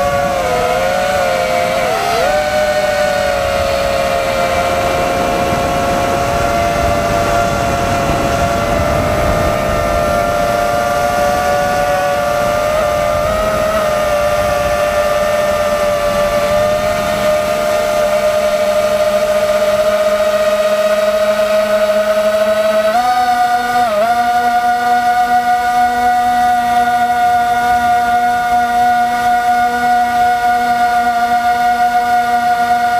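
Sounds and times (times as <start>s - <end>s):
wind rush: 0.0s - 20.2s
drone motors whining: 0.0s - 32.9s.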